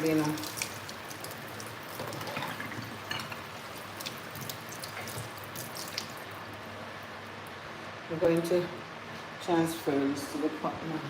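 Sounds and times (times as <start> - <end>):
tap water running into sink: 0.0 - 6.2
food knocking and splashing: 0.0 - 6.5.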